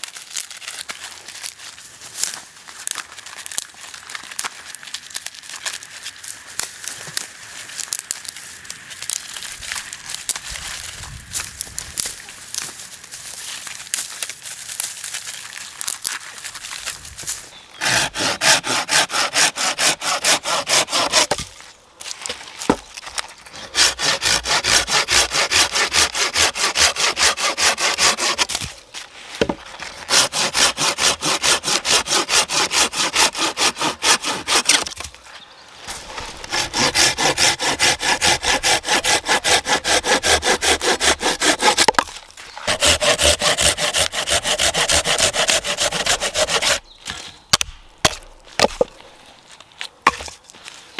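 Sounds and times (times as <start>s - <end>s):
hand saw cutting wood: 17.8s - 21.6s, 23.4s - 28.8s, 29.4s - 35.2s, 35.9s - 47.3s.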